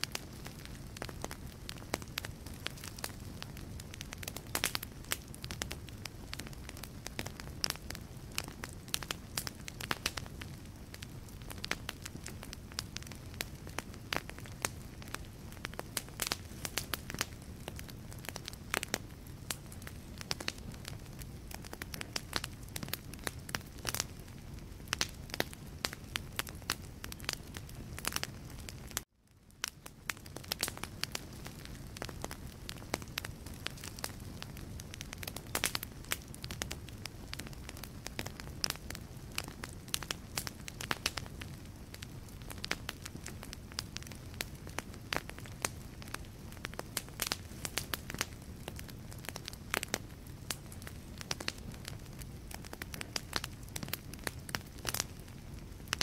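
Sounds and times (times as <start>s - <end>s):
fire flames rumbling: 0.0s - 56.0s
logs crackling and popping: 0.0s - 56.0s.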